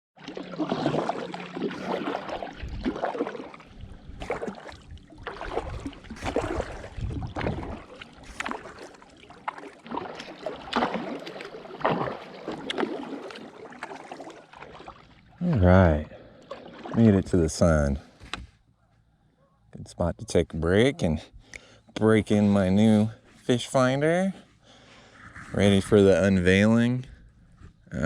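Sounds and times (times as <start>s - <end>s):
water washing against hull: 0.2s - 17.9s
kayak paddle splashing: 0.2s - 18.7s.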